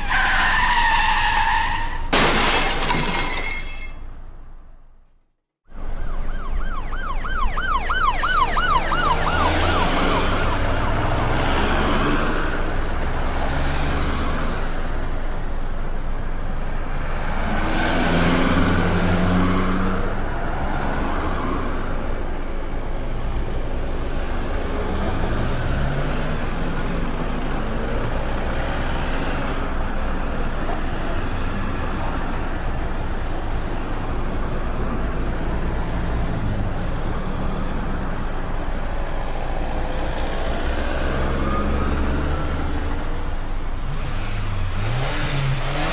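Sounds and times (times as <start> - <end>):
emergency siren warbling: 5.8 - 11.1, 41.1 - 43.0
passing vehicle engines: 6.0 - 45.9.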